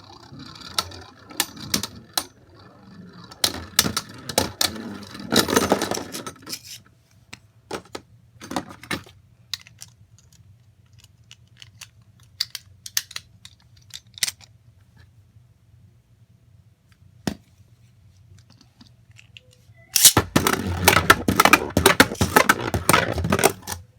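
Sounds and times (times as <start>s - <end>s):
plastic parts clicking and rattling: 7.7s - 14.6s, 18.4s - 23.9s.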